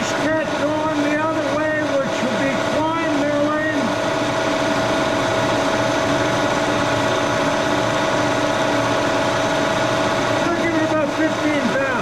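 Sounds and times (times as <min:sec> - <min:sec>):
milling machine whining: 0:00.0 - 0:12.0.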